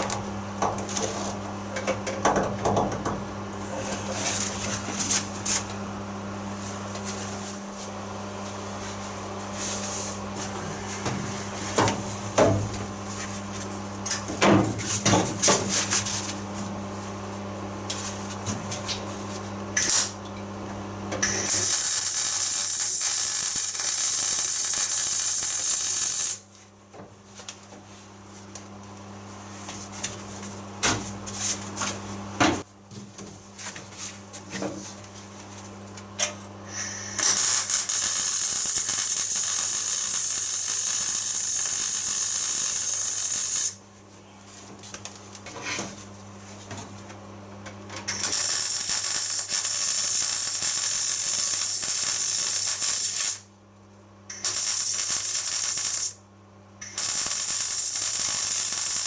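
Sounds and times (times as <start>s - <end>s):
low electrical hum: 0.0s - 59.0s
welding arc crackling hiss: 19.8s - 20.2s, 21.2s - 26.4s, 36.7s - 43.8s, 48.1s - 53.5s, 54.3s - 56.2s, 56.8s - 59.0s.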